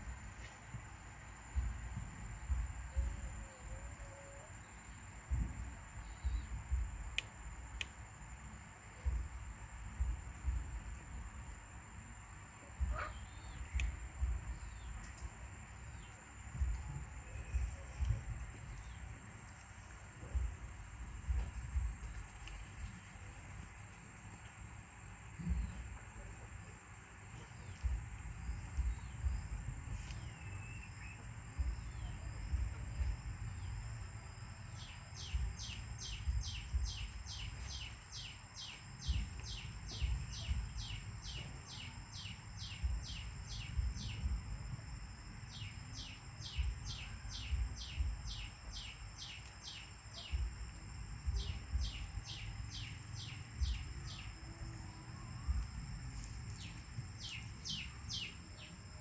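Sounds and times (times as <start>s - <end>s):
bird chirping: 27.4s - 33.8s, 34.7s - 44.7s, 45.4s - 59.0s.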